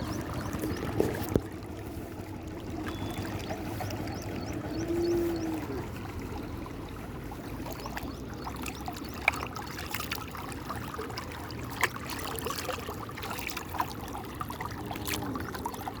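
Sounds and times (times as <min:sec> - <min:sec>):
water trickling and splashing: 0:00.0 - 0:16.0
water drops plinking: 0:02.8 - 0:05.6.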